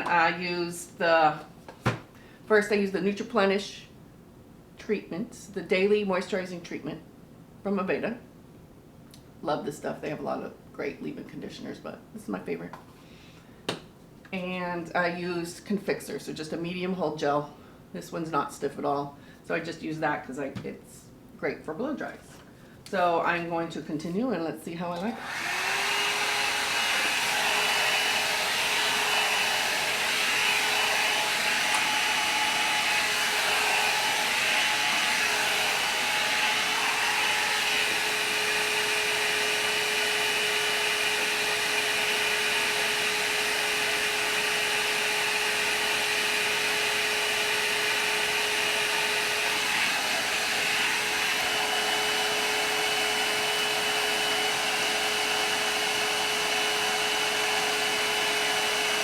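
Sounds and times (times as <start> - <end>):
hair dryer brush running: 0.0 - 0.6, 24.9 - 59.0.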